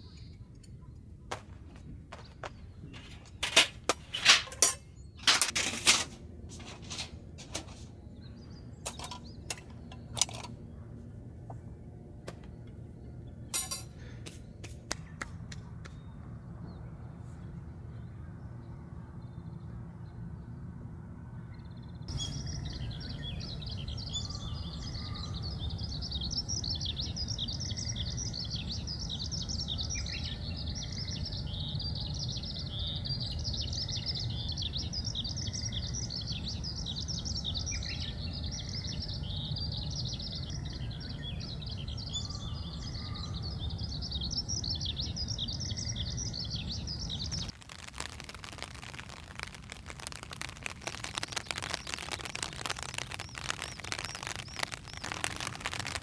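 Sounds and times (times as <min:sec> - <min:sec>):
birds chirping: 0:00.0 - 0:03.5, 0:21.6 - 0:47.5, 0:50.0 - 0:56.0
low outdoor rumble: 0:00.0 - 0:56.0.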